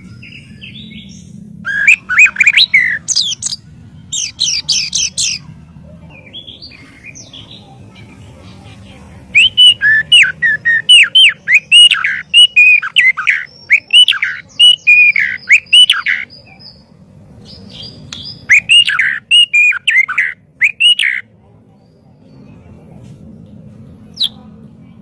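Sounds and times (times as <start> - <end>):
bird singing whistled notes: 0.0 - 5.4, 9.3 - 16.8, 17.4 - 21.3, 24.1 - 24.4.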